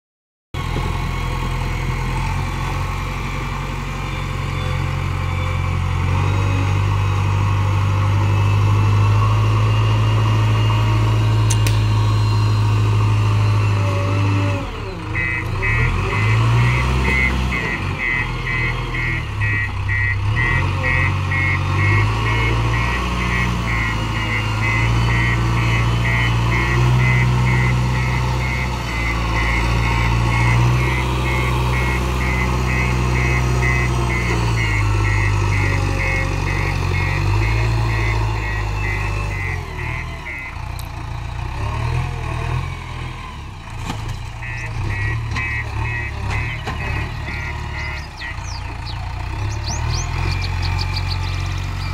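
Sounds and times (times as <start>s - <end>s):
backhoe diesel engine running: 0.6s - 51.9s
reversing alarm beeping: 1.4s - 40.7s, 44.4s - 51.9s.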